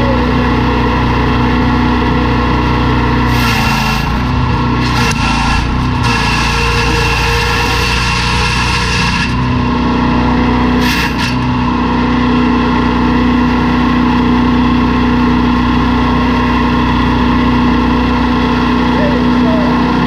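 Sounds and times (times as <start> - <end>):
wood chipper engine running: 0.0 - 20.0
short rasping burst: 3.2 - 9.4.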